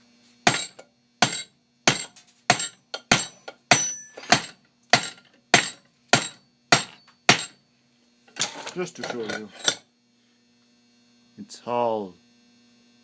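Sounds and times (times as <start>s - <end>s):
hammer striking metal padlock: 0.5s - 7.6s.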